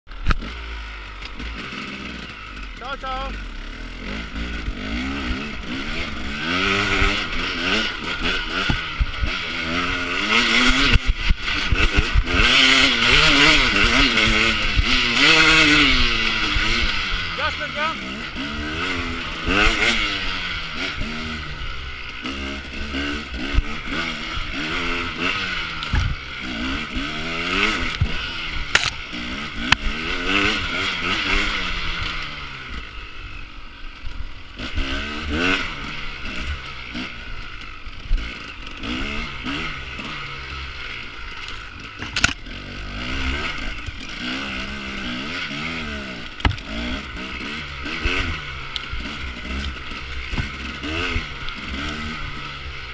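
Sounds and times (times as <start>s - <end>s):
dirt bike engine revving: 0.1s - 52.9s
sharp knocks and clatter: 8.1s - 9.3s, 25.8s - 26.2s, 46.4s - 46.8s, 49.5s - 51.2s.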